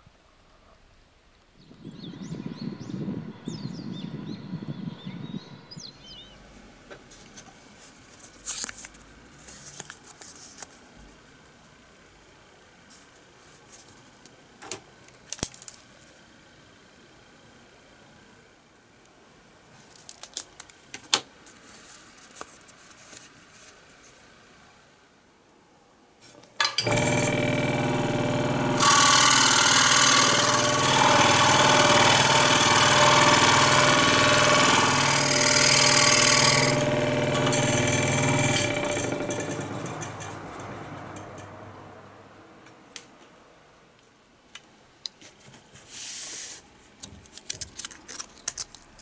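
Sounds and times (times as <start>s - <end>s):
power tool cutting wood: 26.8s - 41.5s.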